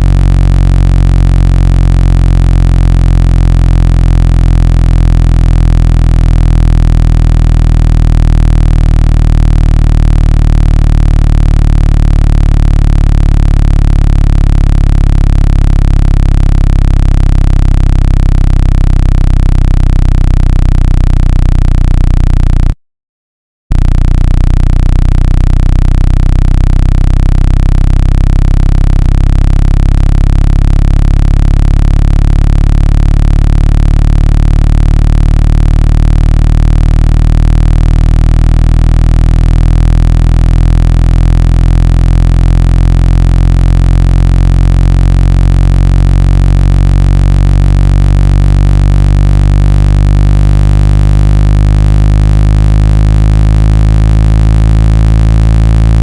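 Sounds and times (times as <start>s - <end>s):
loud electronic low bass tone: 0.0s - 22.8s, 23.7s - 56.0s.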